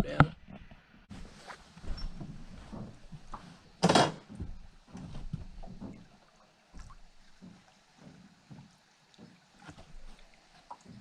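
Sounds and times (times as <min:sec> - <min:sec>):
handling knocks and thumps: 0:00.1 - 0:06.2.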